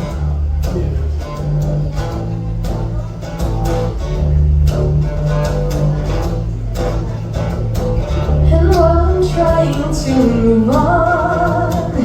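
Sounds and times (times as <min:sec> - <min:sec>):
bass line: 0:00.0 - 0:12.0
guitar: 0:00.0 - 0:12.0
steady drum beat: 0:00.0 - 0:12.0.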